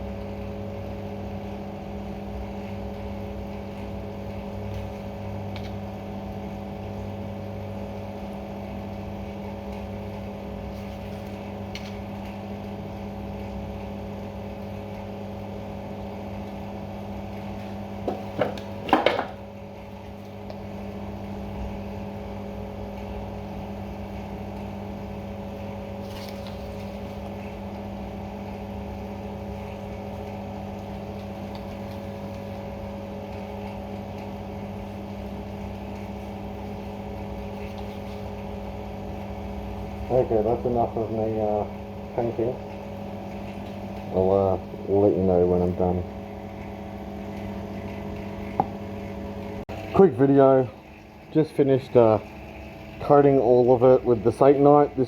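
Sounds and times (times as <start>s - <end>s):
sharp knocks and clatter: 18.0s - 19.4s.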